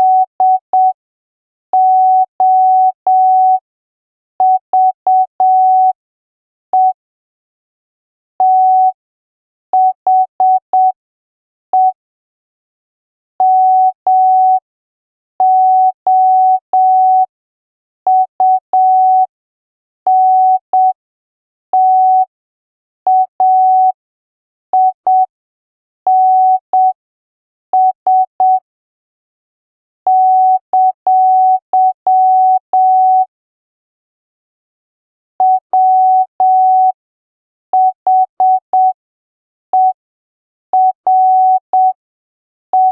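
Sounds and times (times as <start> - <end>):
morse code beeps: 27.8 - 28.6, 35.4 - 37.0, 37.8 - 39.0, 39.8 - 40.0, 40.8 - 42.0.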